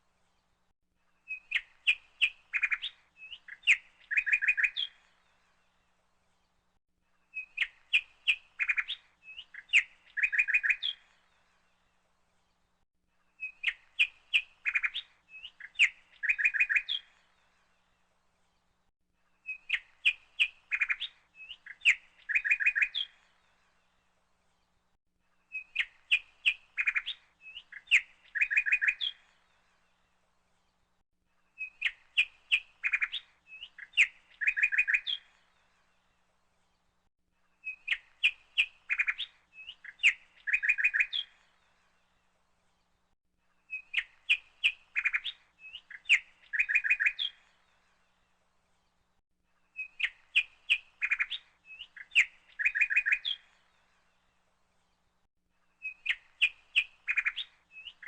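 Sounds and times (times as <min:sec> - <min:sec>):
bird chirping and trilling: 0:01.3 - 0:05.0, 0:07.3 - 0:11.1, 0:13.4 - 0:17.2, 0:19.4 - 0:23.2, 0:25.5 - 0:29.4, 0:31.6 - 0:35.4, 0:37.6 - 0:41.6, 0:43.7 - 0:47.6, 0:49.8 - 0:53.7, 0:55.8 - 0:58.0.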